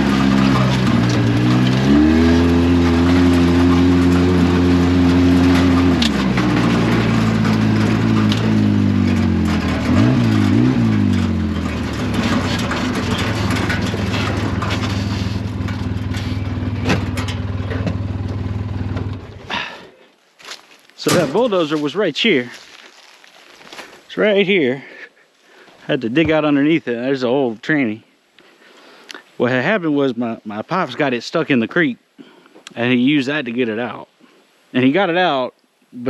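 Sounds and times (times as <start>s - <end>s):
knocks and rattles: 0.0s - 19.8s, 21.0s - 22.0s
off-road vehicle engine running: 0.0s - 19.8s.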